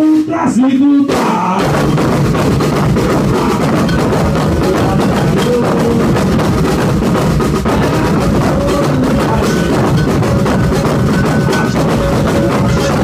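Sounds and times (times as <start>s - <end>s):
percussion ensemble drumming: 0.0s - 13.0s.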